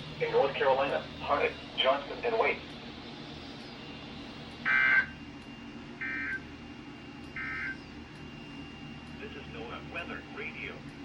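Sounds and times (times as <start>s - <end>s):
digital tone bursts: 7.4s - 7.8s.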